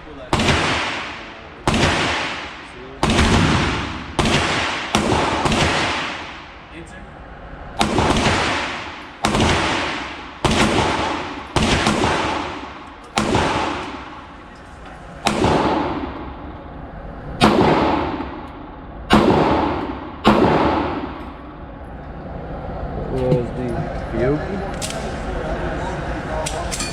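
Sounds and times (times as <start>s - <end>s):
pistol shots echoing indoors: 0.2s - 6.7s, 7.8s - 14.5s, 15.2s - 16.6s, 17.4s - 21.6s.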